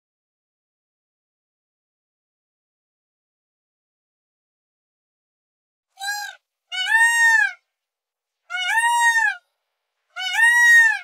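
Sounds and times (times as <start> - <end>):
peacock calling: 6.0 - 7.6, 8.5 - 9.5, 10.2 - 11.0.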